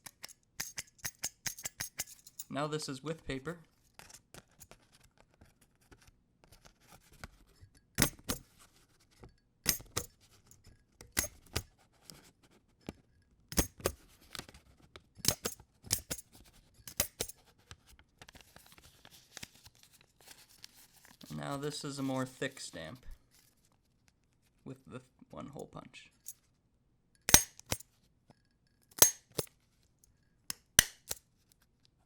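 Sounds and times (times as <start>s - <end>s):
paper handling: 18.2s - 21.6s
hole punch clicks: 30.5s - 31.2s.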